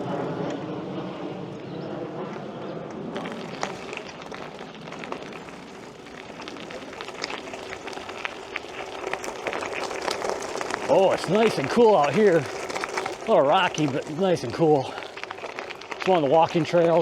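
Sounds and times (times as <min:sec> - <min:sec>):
airplane engine drone: 0:00.0 - 0:06.0
bicycle rolling over rocky ground: 0:00.0 - 0:17.0.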